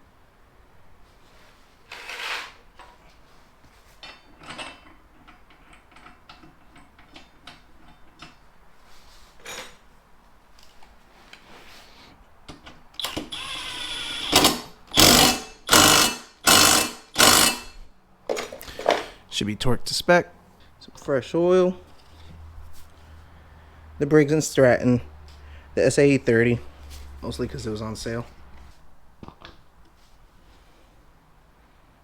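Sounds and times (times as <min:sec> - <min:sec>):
power tool bursts: 0:13.0 - 0:17.8.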